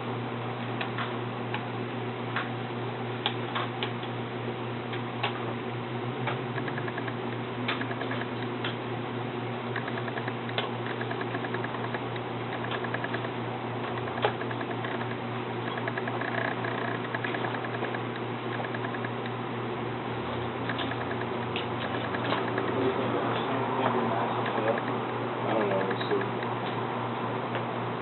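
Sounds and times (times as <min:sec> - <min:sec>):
steady low hum: 0:00.0 - 0:28.0
rapid ticking: 0:06.6 - 0:08.4, 0:09.8 - 0:19.3, 0:20.7 - 0:22.8.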